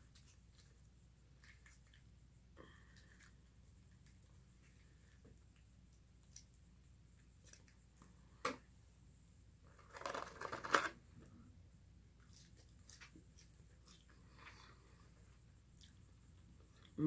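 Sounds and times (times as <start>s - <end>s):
packaging crinkling and rustling: 9.7s - 11.0s.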